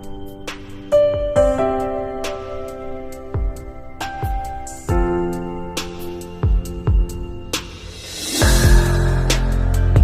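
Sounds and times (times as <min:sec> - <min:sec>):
held chords music: 0:00.0 - 0:10.0
soft drum beat: 0:06.4 - 0:10.0.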